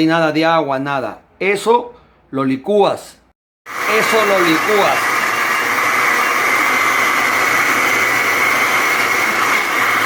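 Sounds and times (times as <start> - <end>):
electric blender motor whine: 3.7 - 10.0.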